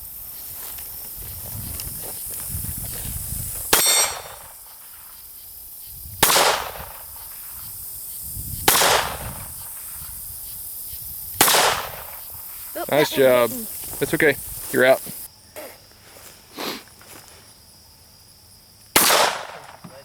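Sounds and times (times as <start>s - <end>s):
pistol shots: 6.2s - 6.8s, 8.7s - 9.2s, 11.4s - 12.0s, 19.0s - 19.8s.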